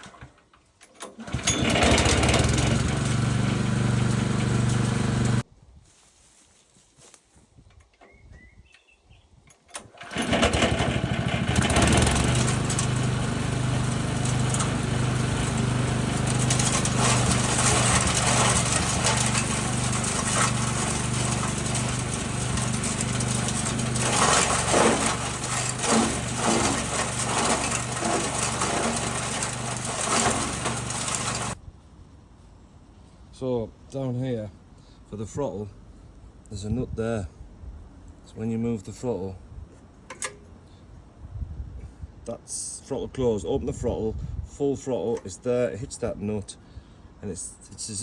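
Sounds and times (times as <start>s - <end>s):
small petrol engine running: 1.2s - 5.4s, 10.0s - 31.6s.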